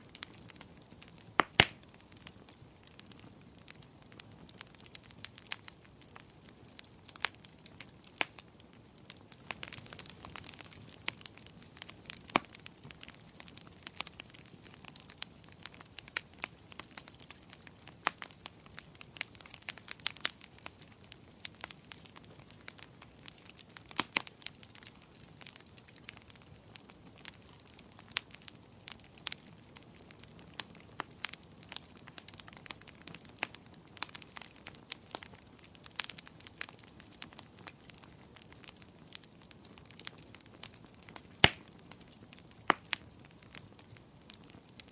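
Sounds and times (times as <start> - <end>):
faint hiss of burning: 0.0 - 44.9
wood fire crackling: 0.0 - 44.9
sharp pops and snaps: 0.1 - 2.0, 9.5 - 22.5, 38.4 - 43.8.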